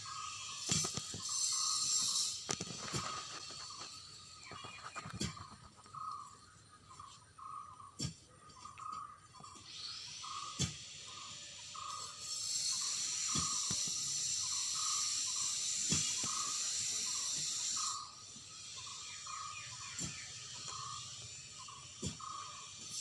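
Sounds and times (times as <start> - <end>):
steady high hiss: 0.0 - 4.7, 9.6 - 23.0.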